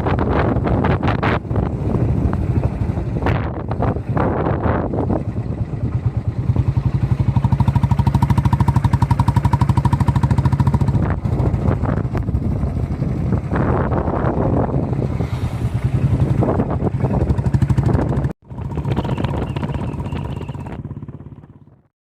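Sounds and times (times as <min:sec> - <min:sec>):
engine pulsing: 0:00.0 - 0:21.9.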